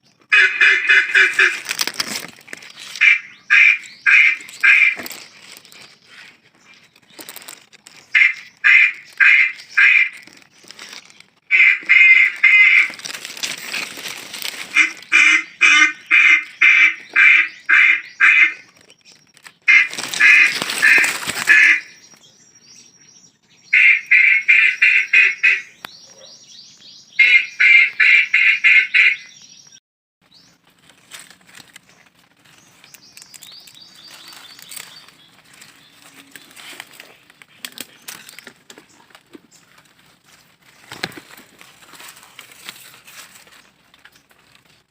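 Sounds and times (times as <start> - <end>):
duck quacking: 0.3 - 1.7, 3.0 - 5.2, 8.1 - 10.3, 11.5 - 13.0, 14.7 - 18.7, 19.7 - 22.0, 23.7 - 25.8, 27.2 - 29.4
faint rustling: 4.4 - 8.2, 12.8 - 15.1, 30.6 - 44.9.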